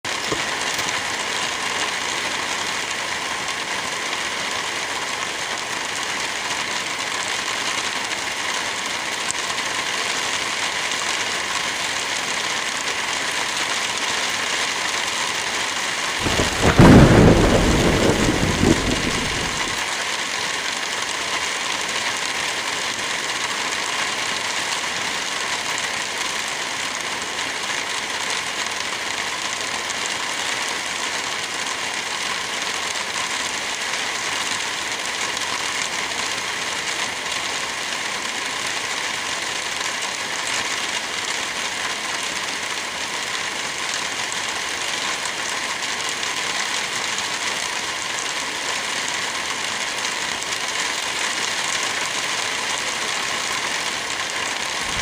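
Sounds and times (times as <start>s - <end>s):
light rain in trees: 0.0s - 55.0s
wind in trees: 14.7s - 20.6s
low rumble: 16.2s - 19.8s.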